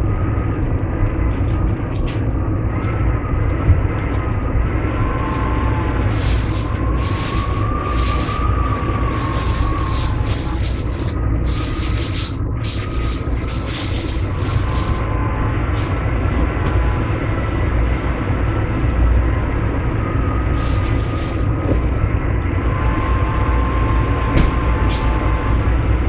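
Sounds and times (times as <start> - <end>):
strong wind blowing: 0.0 - 26.0
wind gusts hissing: 4.6 - 17.8, 20.0 - 25.6.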